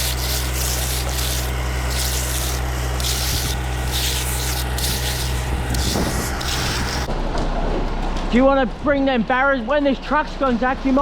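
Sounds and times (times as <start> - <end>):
diesel engine idling: 0.0 - 6.8
float scraping wet concrete: 0.0 - 7.1.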